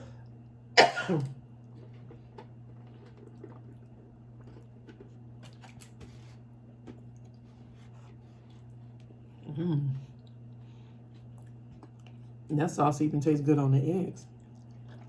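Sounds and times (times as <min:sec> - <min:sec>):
low hum: 0:00.0 - 0:15.0
person chewing: 0:01.6 - 0:12.4, 0:14.4 - 0:15.0.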